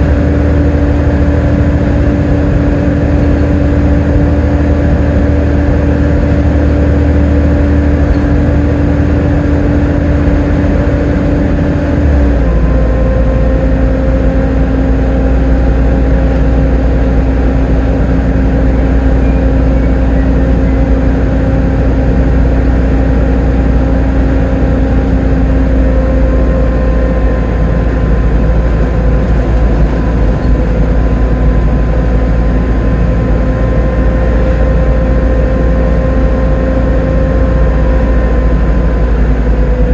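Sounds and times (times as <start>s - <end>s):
bus diesel engine drone: 0.0s - 39.9s
driveline whine: 0.0s - 39.9s.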